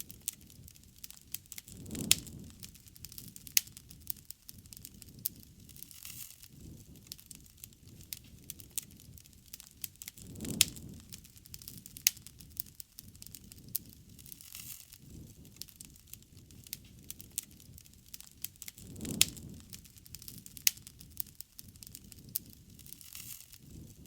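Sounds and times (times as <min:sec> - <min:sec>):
campfire crackling and popping: 0:00.0 - 0:24.0
soft rush of flame: 0:00.0 - 0:24.0.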